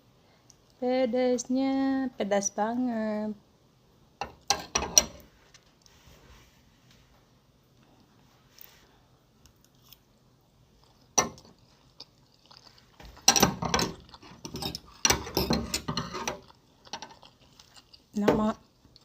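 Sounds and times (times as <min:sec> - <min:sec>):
person eating meatballs: 0:09.2 - 0:15.4, 0:16.0 - 0:19.0
loud chewing: 0:16.3 - 0:19.0.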